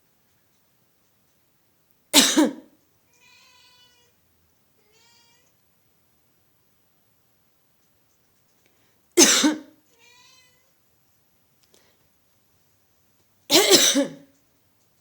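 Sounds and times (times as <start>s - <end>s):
person coughing: 2.2s - 2.7s, 9.2s - 9.7s, 13.5s - 14.3s
faint cat meow: 3.1s - 4.2s, 4.8s - 5.6s, 9.8s - 10.8s.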